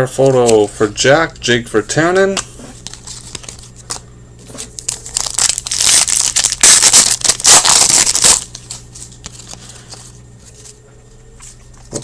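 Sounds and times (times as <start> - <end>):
plastic wrapper crinkling: 2.8 - 10.0.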